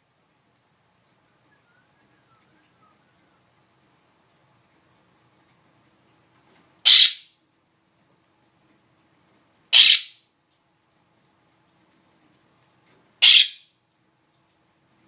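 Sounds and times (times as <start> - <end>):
bird squawking: 6.8 - 7.4, 9.7 - 10.2, 13.2 - 13.7.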